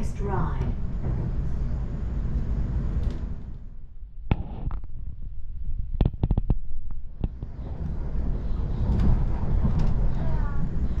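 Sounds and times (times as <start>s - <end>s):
train clacks and knocks: 0.0s - 3.4s, 7.2s - 11.0s
train low rumble: 0.0s - 11.0s.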